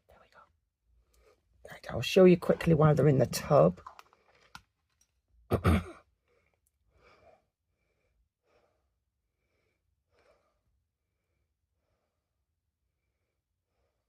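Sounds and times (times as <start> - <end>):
faint breaths: 6.2 - 14.0.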